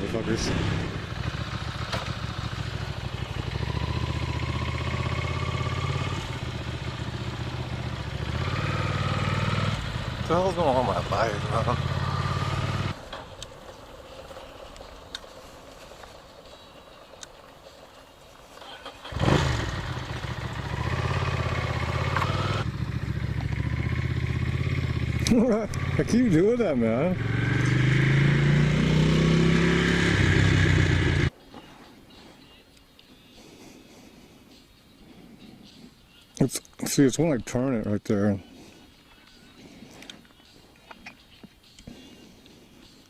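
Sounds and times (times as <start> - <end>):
motorcycle engine running: 0.0 - 31.3.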